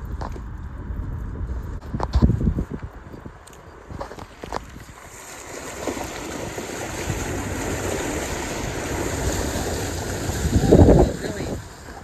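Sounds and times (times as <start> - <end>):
water splashing against vehicle: 3.9 - 12.0.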